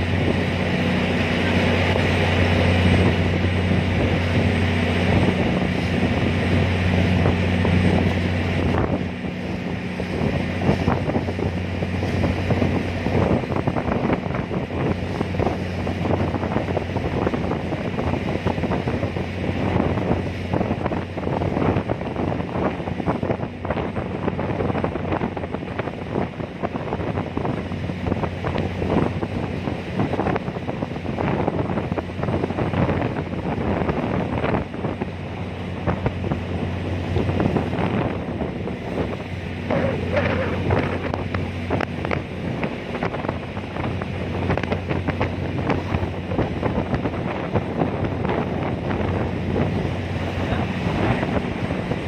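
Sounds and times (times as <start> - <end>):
low engine hum: 0.0 - 52.0
wind buffeting microphone: 0.0 - 52.0.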